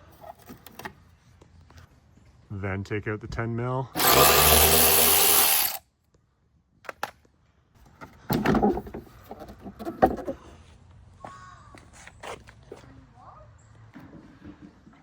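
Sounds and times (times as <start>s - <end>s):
power drill spinning: 4.0s - 5.8s
hard plastic clunks and knocks: 8.0s - 10.5s.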